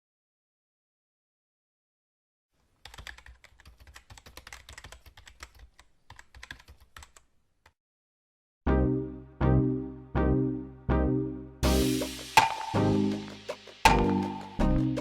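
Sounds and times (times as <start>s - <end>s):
typing on a computer keyboard: 2.8s - 7.8s
music with struck decaying notes: 11.6s - 15.0s.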